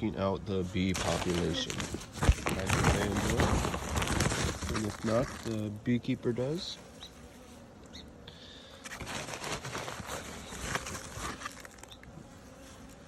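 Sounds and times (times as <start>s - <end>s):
dry plant material rustling: 0.6s - 6.6s, 8.6s - 13.0s.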